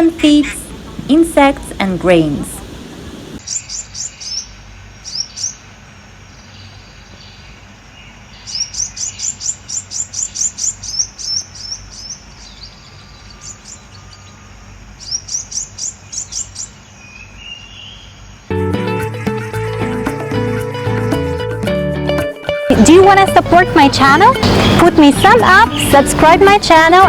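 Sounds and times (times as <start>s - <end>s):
myna calling: 0.0s - 3.4s, 22.7s - 27.0s.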